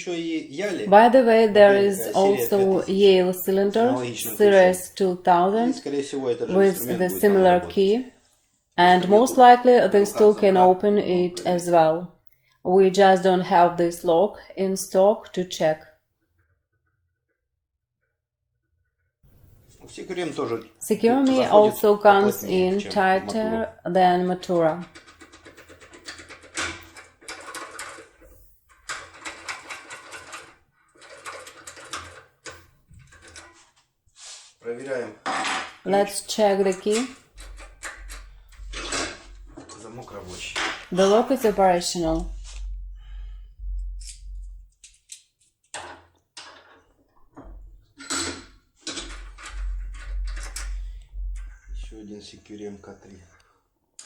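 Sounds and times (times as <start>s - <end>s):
lock and key clicks and scrapes: 24.9s - 33.6s, 36.8s - 39.7s, 47.5s - 51.5s.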